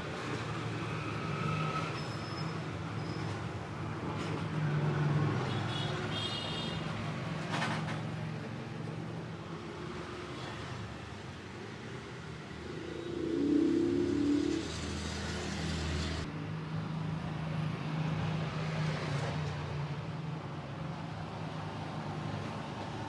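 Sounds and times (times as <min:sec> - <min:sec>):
vehicle engine passing: 0:11.6 - 0:16.3
steady low hum: 0:12.1 - 0:16.3
low rumble: 0:12.5 - 0:16.3.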